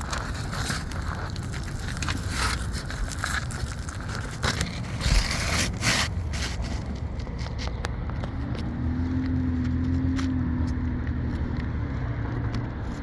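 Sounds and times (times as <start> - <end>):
roof shingles scraping and crunching: 0.0 - 10.4.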